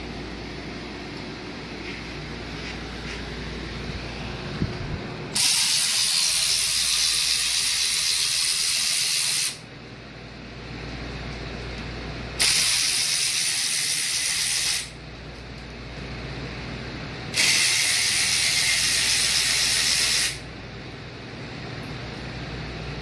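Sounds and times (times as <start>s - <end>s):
pressurized gas hissing: 5.3s - 9.6s, 17.4s - 20.4s.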